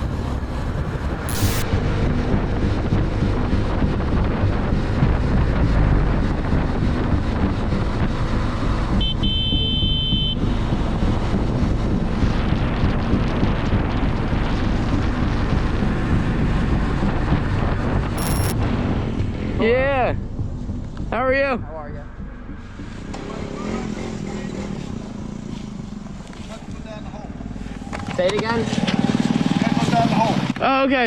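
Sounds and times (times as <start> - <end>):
high steady tone: 1.3 - 1.9, 18.2 - 18.6.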